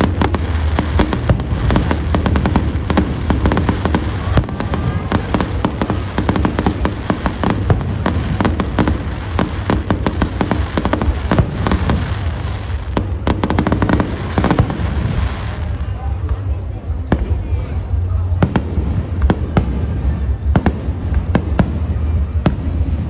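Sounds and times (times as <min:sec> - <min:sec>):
fireworks crackling: 0:00.0 - 0:23.0
low rumble of fireworks booms: 0:00.0 - 0:23.0.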